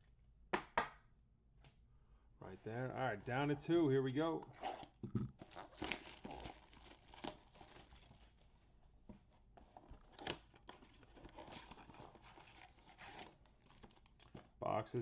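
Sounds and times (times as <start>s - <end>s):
packaging tearing and crinkling: 4.6s - 8.3s, 10.1s - 14.4s.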